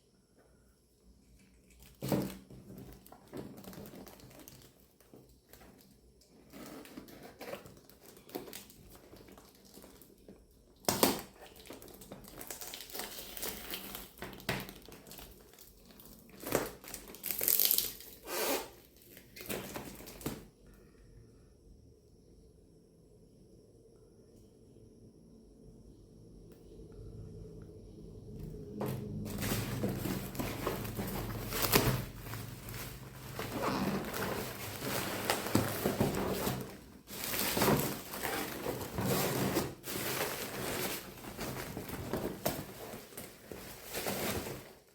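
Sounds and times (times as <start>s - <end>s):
packaging crinkling and rustling: 1.4s - 18.3s, 18.9s - 20.5s, 28.8s - 44.9s.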